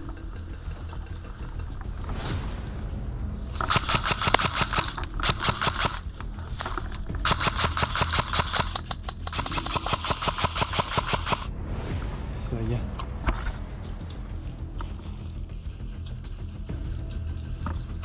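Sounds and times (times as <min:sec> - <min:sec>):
airsoft rifle firing full auto: 0:03.6 - 0:06.0, 0:07.2 - 0:11.5.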